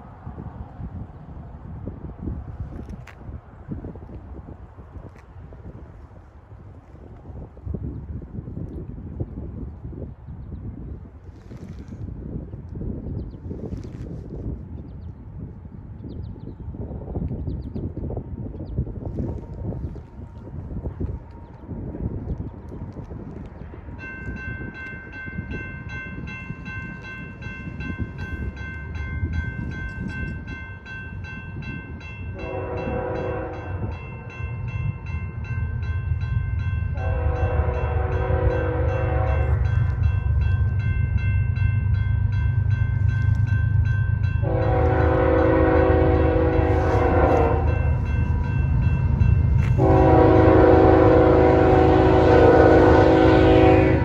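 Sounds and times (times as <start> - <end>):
crossing bell ringing: 24.0 - 54.0
locomotive engine rumble: 32.3 - 54.0
train air horn blasts: 32.4 - 34.0, 36.9 - 39.9, 44.4 - 48.8, 49.5 - 54.0.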